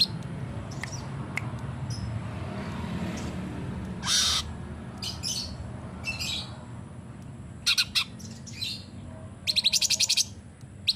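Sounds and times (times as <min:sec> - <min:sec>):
songbird chirping and rattling: 0:00.0 - 0:02.2, 0:03.1 - 0:06.6, 0:07.6 - 0:10.9.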